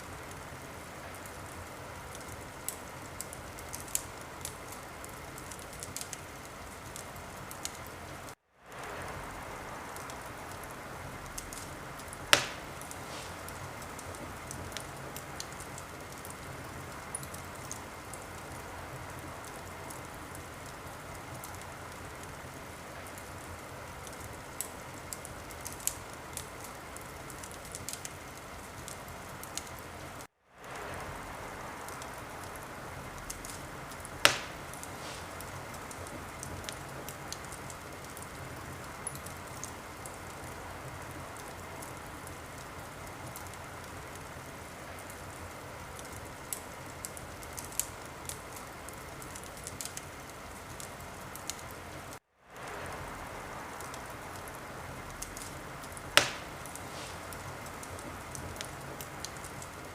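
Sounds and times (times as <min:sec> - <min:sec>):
wood fire crackling: 0:00.0 - 0:59.9
loud sharp fire pops: 0:09.9 - 0:16.4, 0:33.2 - 0:38.2, 0:55.1 - 0:59.6.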